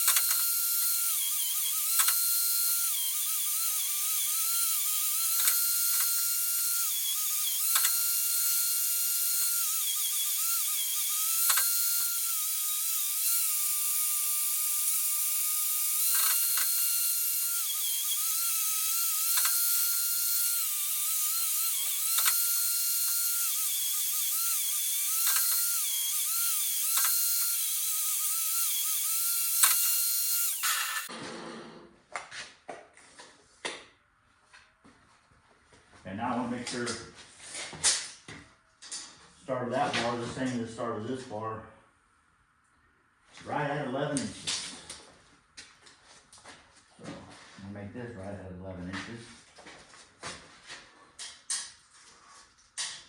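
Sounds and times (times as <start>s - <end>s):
power grinder whine: 0.0s - 31.4s
sharp click: 2.0s - 2.2s, 26.9s - 27.2s, 29.6s - 30.0s.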